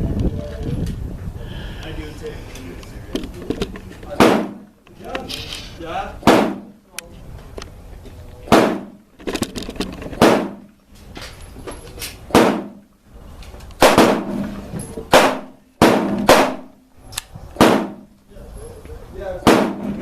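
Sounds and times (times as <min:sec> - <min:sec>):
faint distant gunshots: 0:04.2 - 0:04.7, 0:06.2 - 0:06.8, 0:08.5 - 0:09.0, 0:10.2 - 0:10.7, 0:12.3 - 0:12.8, 0:13.8 - 0:14.4, 0:15.1 - 0:16.7, 0:17.6 - 0:18.1, 0:19.4 - 0:20.0
pistol shots: 0:04.2 - 0:04.7, 0:06.2 - 0:06.8, 0:08.5 - 0:09.0, 0:10.2 - 0:10.7, 0:12.3 - 0:12.8, 0:13.8 - 0:14.3, 0:15.1 - 0:16.7, 0:17.6 - 0:18.1, 0:19.4 - 0:19.9.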